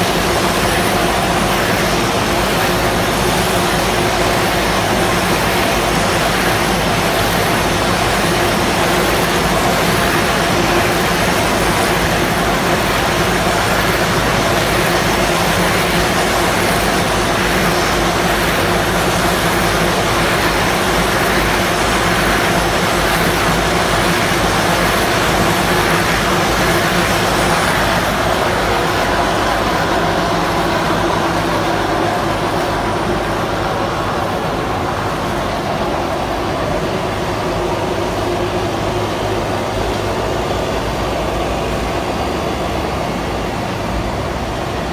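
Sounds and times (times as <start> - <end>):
diesel engine running loudly: 0.0 - 44.9.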